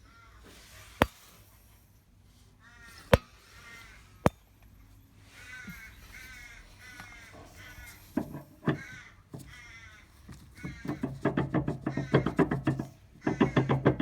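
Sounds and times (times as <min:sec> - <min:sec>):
crows cawing: 0:00.0 - 0:00.5, 0:02.6 - 0:04.3, 0:05.3 - 0:11.1, 0:11.8 - 0:12.5, 0:13.2 - 0:14.0.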